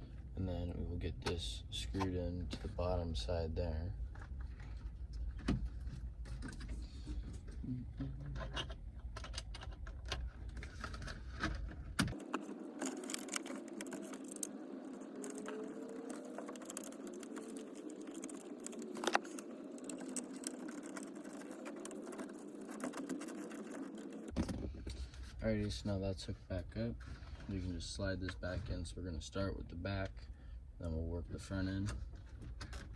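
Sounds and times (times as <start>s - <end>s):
steady hum: 10.5s - 31.8s.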